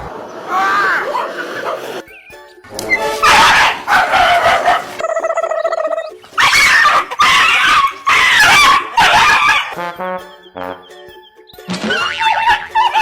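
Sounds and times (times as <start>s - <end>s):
dog barking: 3.2s - 5.0s, 6.4s - 9.8s
dog long held cry: 3.2s - 5.0s, 6.4s - 9.8s.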